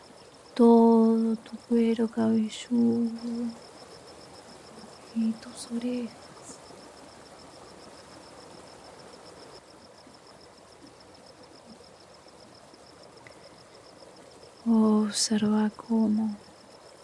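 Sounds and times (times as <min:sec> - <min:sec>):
insect calling pulsed note: 0:00.2 - 0:09.6
forest stream rushing: 0:03.5 - 0:15.9.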